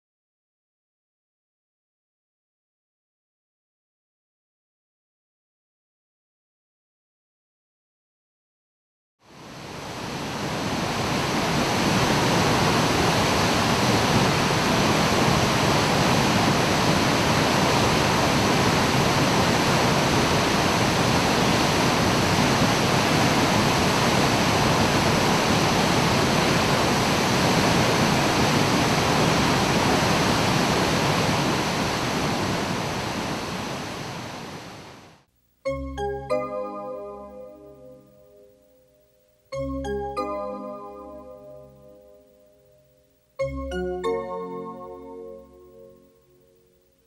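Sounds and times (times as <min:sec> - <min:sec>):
waterfall rushing: 0:09.3 - 0:35.3.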